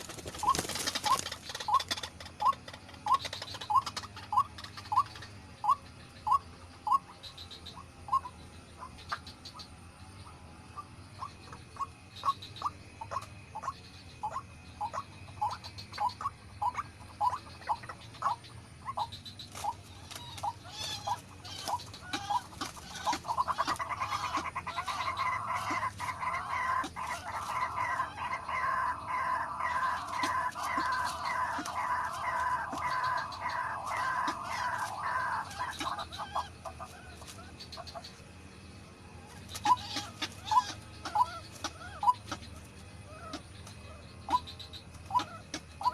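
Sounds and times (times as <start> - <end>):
waterhen calling: 10.8 - 38.1, 39.5 - 45.9.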